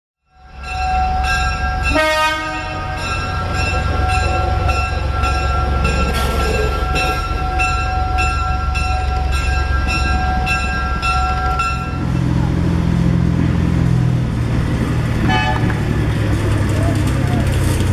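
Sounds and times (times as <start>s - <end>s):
bell ringing: 0.3s - 12.3s
locomotive rumble: 0.3s - 17.9s
train horn chord: 1.8s - 3.2s, 15.2s - 15.8s.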